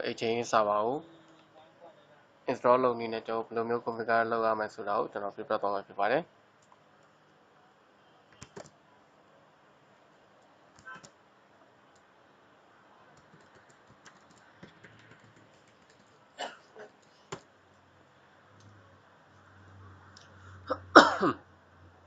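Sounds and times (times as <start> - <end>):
keyboard typing: 8.3 - 8.8, 13.1 - 16.2, 16.9 - 17.5.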